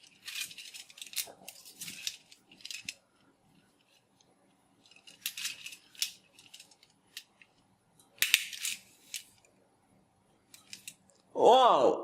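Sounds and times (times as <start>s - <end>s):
plastic toys clicking and rattling: 0.0s - 3.1s, 4.8s - 9.4s, 10.5s - 11.1s.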